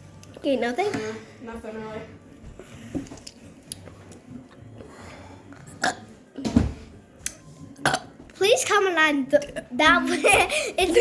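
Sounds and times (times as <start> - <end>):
low short burp: 5.8 - 6.1.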